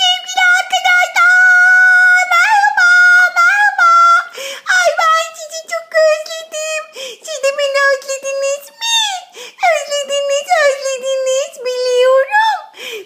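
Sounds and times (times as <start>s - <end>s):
high-pitched voice singing: 0.0s - 12.7s
short breath: 4.3s - 4.7s, 6.9s - 7.2s, 9.3s - 9.6s, 12.7s - 13.0s.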